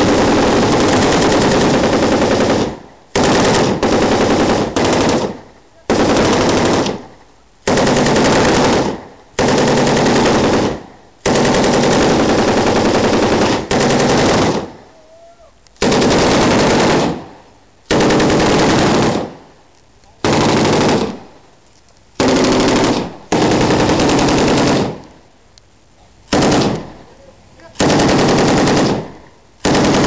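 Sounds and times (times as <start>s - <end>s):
machine gun bursts: 0.0s - 7.1s, 7.7s - 14.7s, 15.8s - 17.2s, 17.9s - 19.4s, 20.2s - 21.2s, 22.2s - 25.0s, 26.3s - 26.8s, 27.8s - 30.0s.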